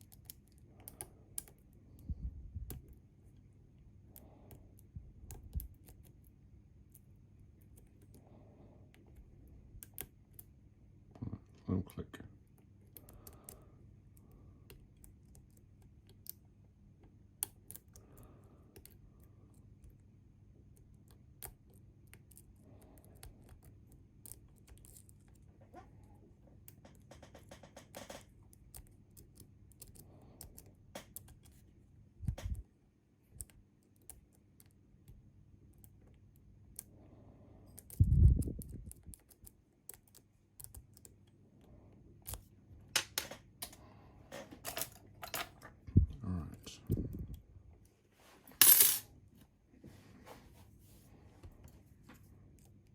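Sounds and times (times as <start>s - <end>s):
lock picks clicking and scratching: 20.8s - 25.5s, 37.7s - 41.3s, 44.6s - 45.7s.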